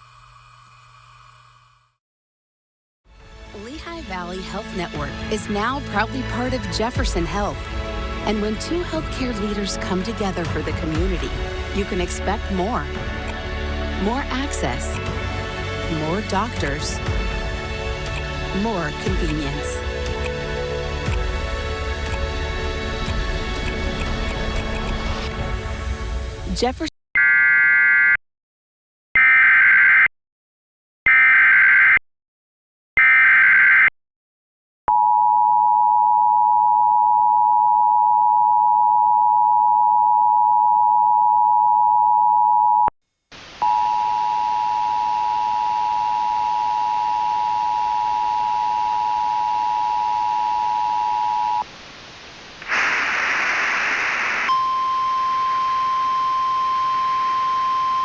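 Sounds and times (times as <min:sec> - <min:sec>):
static burst: 0:43.3 - 0:44.9, 0:51.6 - 0:54.7
steady warning alarm tone: 0:43.7 - 0:51.6, 0:54.5 - 0:58.0
faint hiss: 0:51.6 - 0:54.5
warbling data bursts: 0:51.6 - 0:54.7
two-tone attention signal: 0:54.5 - 0:58.0.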